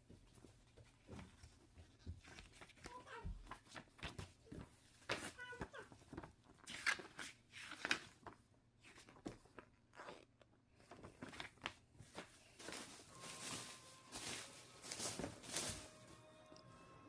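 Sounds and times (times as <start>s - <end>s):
packaging crinkling and rustling: 6.0s - 16.3s.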